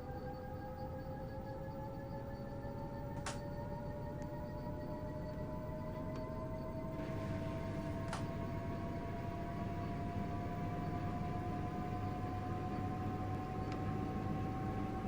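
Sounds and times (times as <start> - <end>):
washing machine motor whining: 3.7 - 15.0
faint clicks: 13.7 - 13.9.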